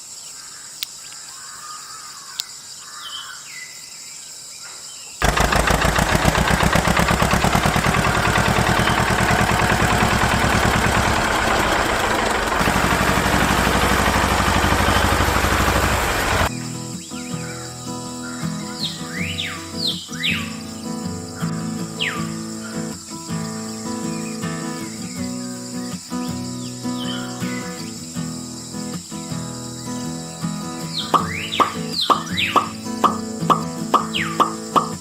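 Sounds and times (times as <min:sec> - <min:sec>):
birds chirping: 0:05.0 - 0:28.0, 0:29.6 - 0:35.0
small motor buzzing rattle: 0:05.2 - 0:16.5.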